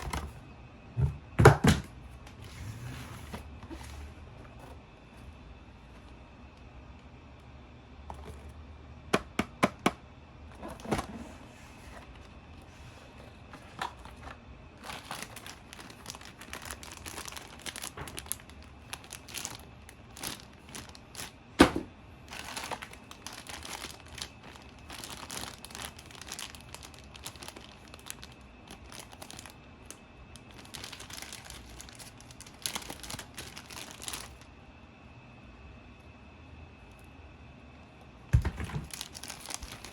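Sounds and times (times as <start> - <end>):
packaging crinkling and tearing: 13.4 - 21.4, 22.2 - 34.5, 38.5 - 39.9.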